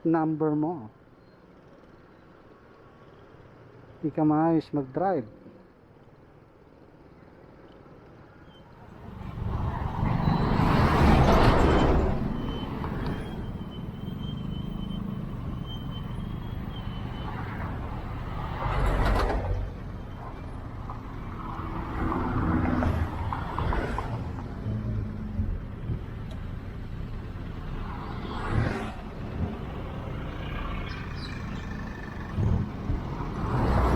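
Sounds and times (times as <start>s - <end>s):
road traffic: 0.0s - 33.9s
scooter engine: 29.0s - 33.5s.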